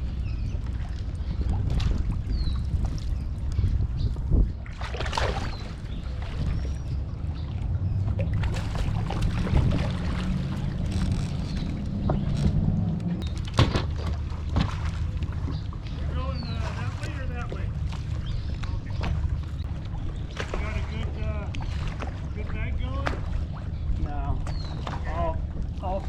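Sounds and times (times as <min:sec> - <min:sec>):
water around kayak: 0:00.0 - 0:26.0
wind rumble: 0:00.0 - 0:26.0
gear knocking against hull: 0:08.8 - 0:14.7.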